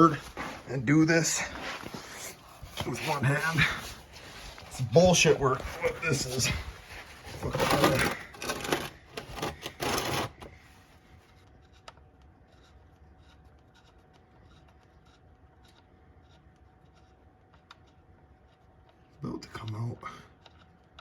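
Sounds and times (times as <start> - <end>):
phone handling rustling: 1.7 - 10.6.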